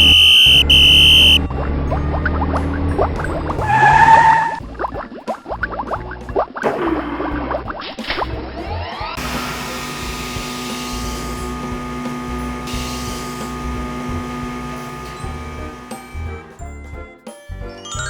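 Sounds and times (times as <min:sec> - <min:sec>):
cartoon machine whirring: 0:09.2 - 0:16.6.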